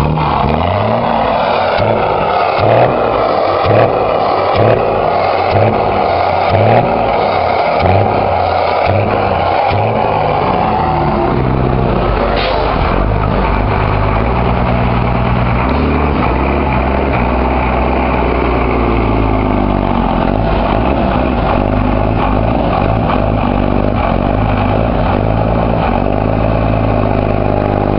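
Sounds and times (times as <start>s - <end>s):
vehicle engine running: 0.0s - 27.9s.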